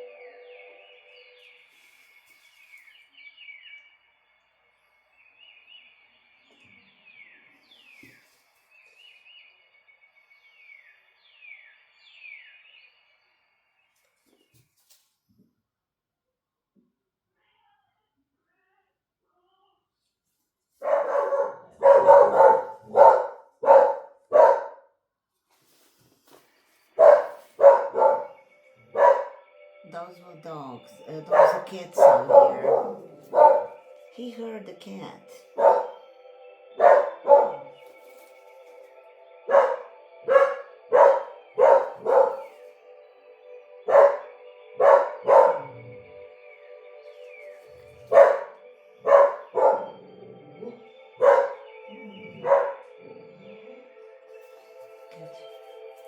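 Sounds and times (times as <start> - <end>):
dogs barking: 20.8 - 24.9, 27.0 - 29.5, 31.1 - 34.0, 35.3 - 36.1, 36.8 - 37.8, 39.4 - 42.7, 43.8 - 46.1, 47.3 - 53.9.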